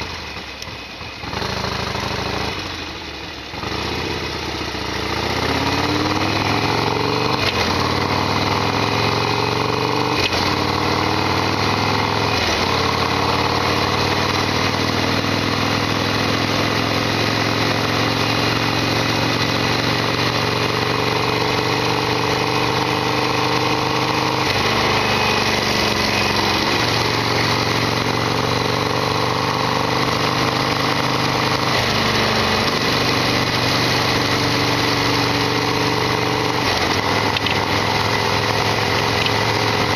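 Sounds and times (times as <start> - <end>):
motorcycle engine revving: 0.0 - 39.9
gear shifts: 36.6 - 39.9.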